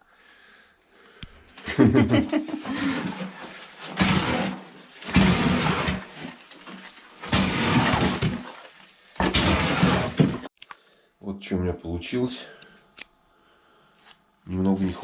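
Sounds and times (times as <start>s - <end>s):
mortar scraping on floor: 2.5s - 10.5s.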